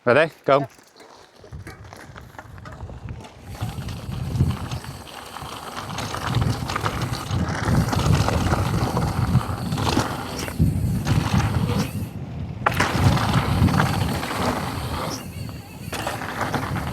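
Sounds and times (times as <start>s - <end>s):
bike rattling and clicking: 0.7s - 16.9s
bike tyres rumbling over dirt: 0.8s - 16.9s.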